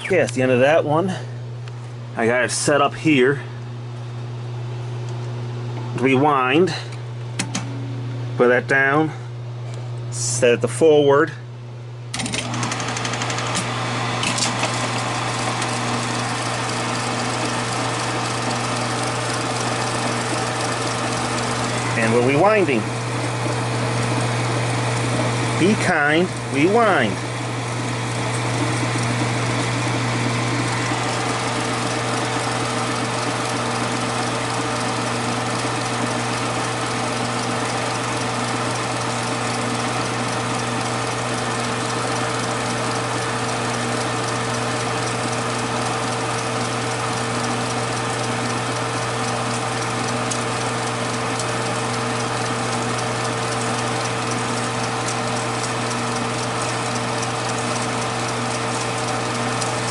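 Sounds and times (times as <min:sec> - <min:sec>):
film projector motor whirring: 0:12.1 - 0:59.9.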